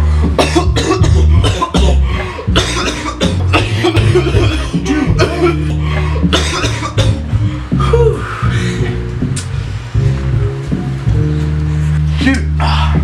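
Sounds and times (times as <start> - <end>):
background music with bass: 0.0 - 13.0
people coughing: 0.4 - 8.0.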